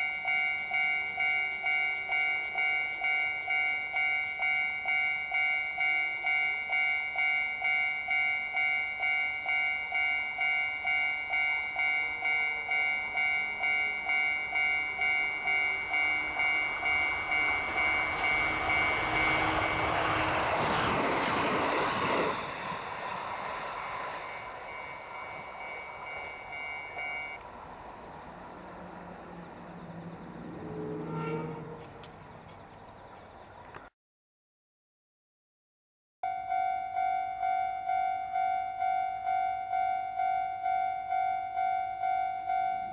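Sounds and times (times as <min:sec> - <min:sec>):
level crossing warning bell: 0:00.0 - 0:27.4, 0:36.2 - 0:42.9
train passing: 0:00.0 - 0:33.8, 0:36.4 - 0:42.9.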